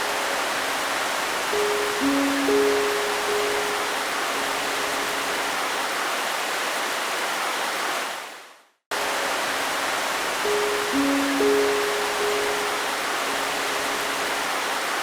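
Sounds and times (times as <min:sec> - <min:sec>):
faint held music notes: 0:00.0 - 0:04.8, 0:10.3 - 0:14.6
steady rain hiss: 0:00.0 - 0:15.0.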